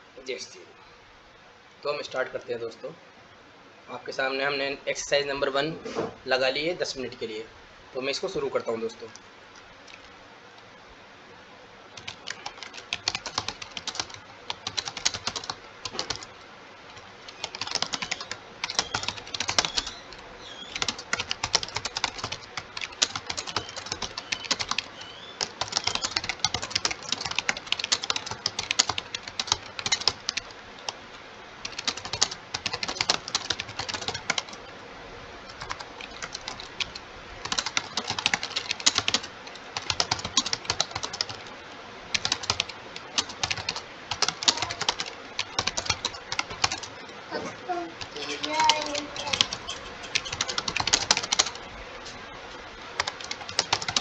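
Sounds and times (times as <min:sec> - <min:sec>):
fast keyboard typing: 0:12.0 - 0:31.0, 0:31.6 - 0:34.7, 0:35.5 - 0:41.5, 0:42.1 - 0:47.0, 0:48.0 - 0:51.7, 0:53.0 - 0:54.0.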